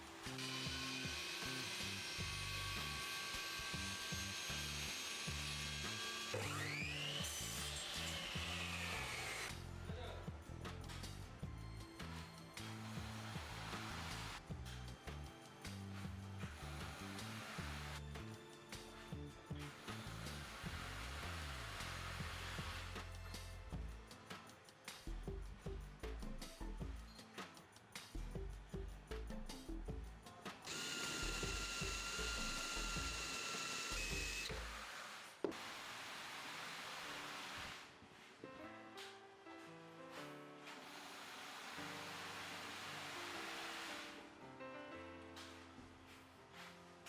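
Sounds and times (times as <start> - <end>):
power tool whining: 0.0 - 9.6, 30.7 - 35.7
background music with bass line: 9.5 - 21.2, 22.0 - 24.2, 25.0 - 27.2, 28.1 - 30.3.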